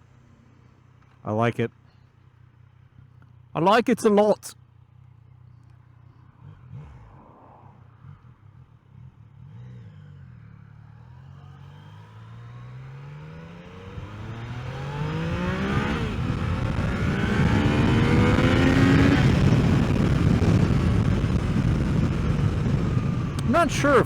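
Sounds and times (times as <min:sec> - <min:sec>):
motorcycle engine accelerating: 0:05.2 - 0:24.0
wind rush: 0:16.1 - 0:24.0.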